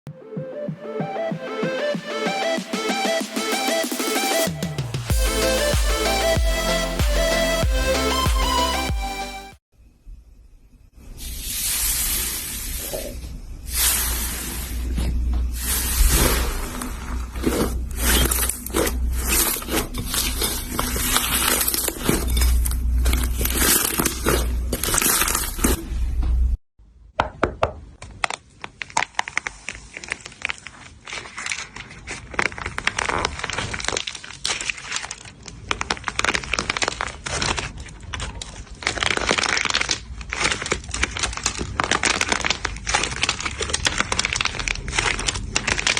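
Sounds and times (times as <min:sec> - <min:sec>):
slime crackling and popping: 0:15.6 - 0:25.8, 0:28.0 - 0:45.9.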